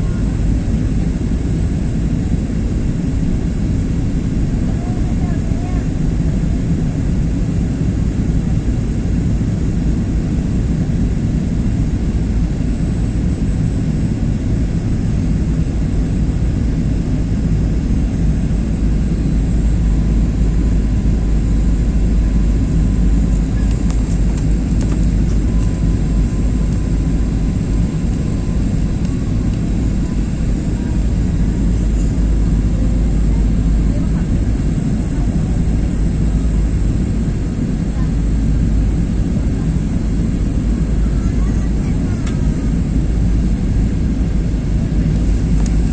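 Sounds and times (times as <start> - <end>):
airliner engines droning: 0.0 - 45.9
high whine: 17.2 - 45.9.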